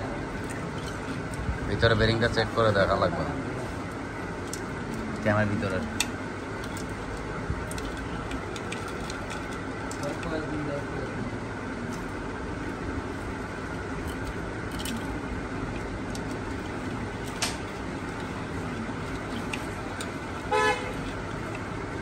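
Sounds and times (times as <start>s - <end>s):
street and workshop background noise: 0.0s - 22.0s
vehicle horn toot: 20.5s - 21.0s.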